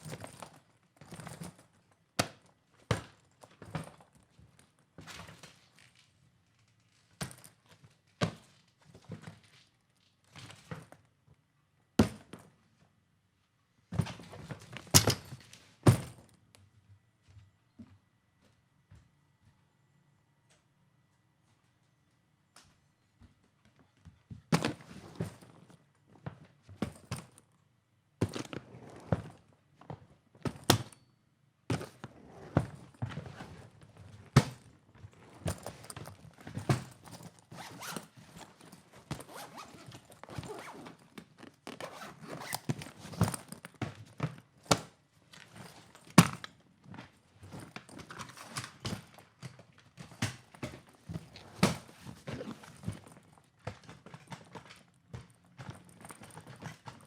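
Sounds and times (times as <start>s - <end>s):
leather creaking and rustling: 0.0s - 11.1s, 14.0s - 16.4s, 24.5s - 27.6s, 28.2s - 31.0s, 31.7s - 57.0s
bag thumping and knocking: 24.5s - 25.7s, 28.2s - 29.4s, 31.7s - 46.6s, 47.4s - 54.6s
zipper rasps: 37.0s - 43.4s, 51.3s - 53.0s.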